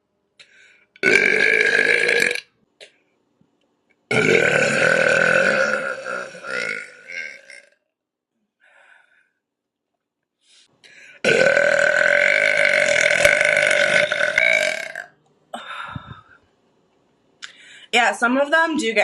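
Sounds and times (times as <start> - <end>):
woman burping: 1.0 - 2.4, 4.1 - 7.8, 11.2 - 15.7.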